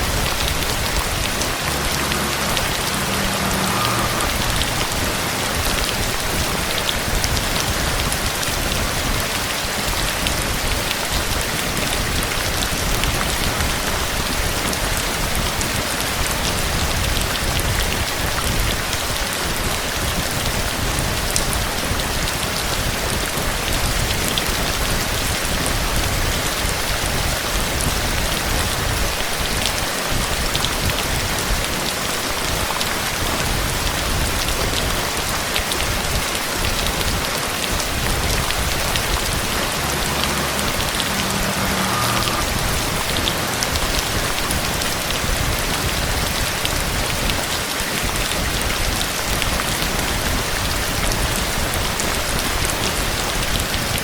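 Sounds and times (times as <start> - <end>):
heavy rain pattering: 0.0 - 54.0.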